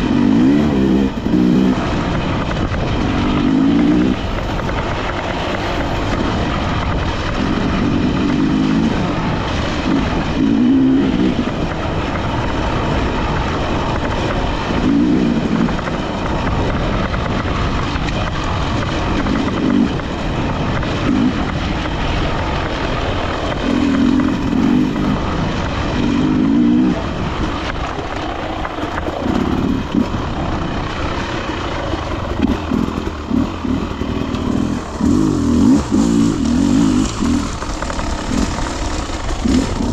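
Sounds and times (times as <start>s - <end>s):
constant rushing noise: 0.0s - 39.9s
dirt bike engine revving: 0.0s - 39.9s.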